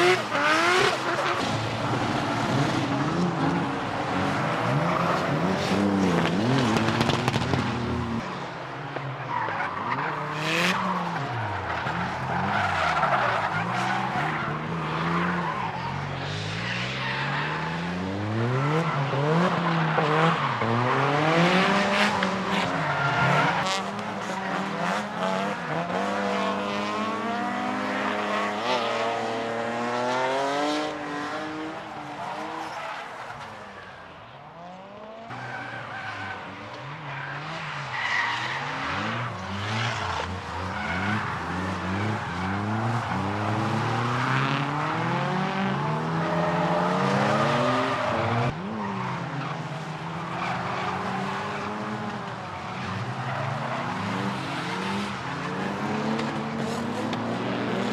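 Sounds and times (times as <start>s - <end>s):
car engine revving: 0.0s - 8.2s
tyres skidding and squealing: 0.0s - 57.9s.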